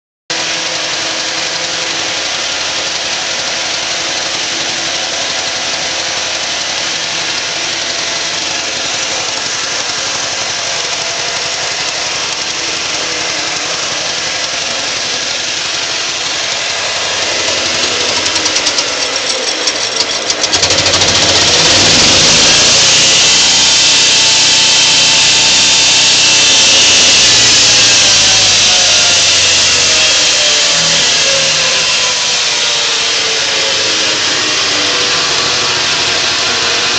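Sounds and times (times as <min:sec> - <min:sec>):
rapid rattling: 0:00.3 - 0:36.9
wood chipper engine running: 0:00.3 - 0:36.9.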